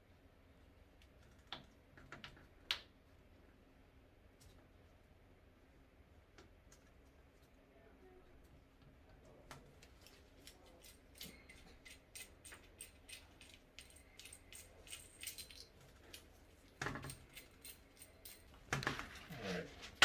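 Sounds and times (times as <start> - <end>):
light metal clicks and clinks: 9.8 - 19.3.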